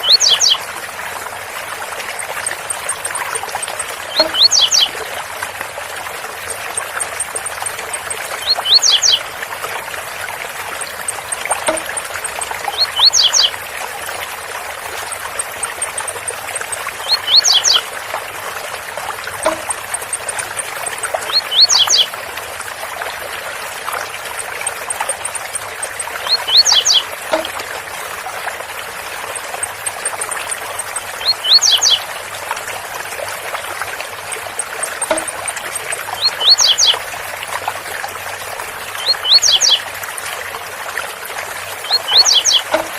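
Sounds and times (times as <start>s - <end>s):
very high ticks: 2.1s - 5.1s, 6.1s - 9.4s, 10.2s - 13.6s, 14.3s - 18.3s, 18.9s - 22.1s, 24.2s - 27.8s, 29.2s - 32.1s, 33.6s - 37.1s, 41.9s - 42.9s
bird singing high rising notes: 4.1s - 4.9s, 26.3s - 27.0s.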